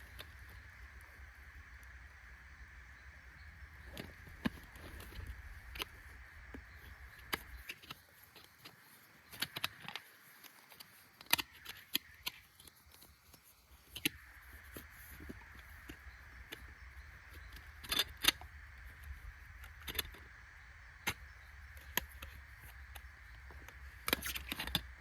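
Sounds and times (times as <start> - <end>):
faint steady hiss: 0.0 - 25.0
clicks and clatter of gear handled: 3.9 - 16.6.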